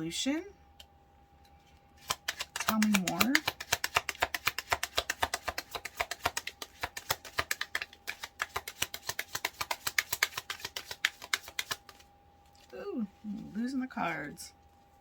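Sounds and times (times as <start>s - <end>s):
cards being shuffled: 2.0s - 12.7s.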